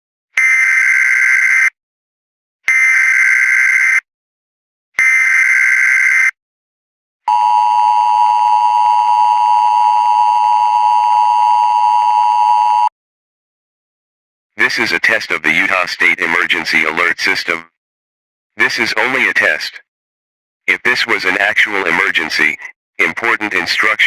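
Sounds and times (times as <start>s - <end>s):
steady two-tone attention signal: 7.3s - 12.9s.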